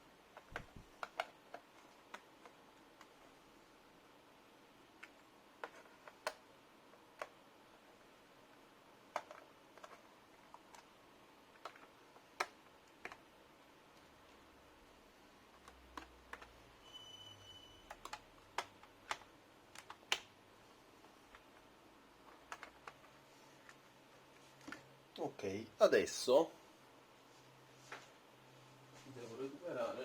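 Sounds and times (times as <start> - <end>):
brief high squeak: 16.8 - 17.9.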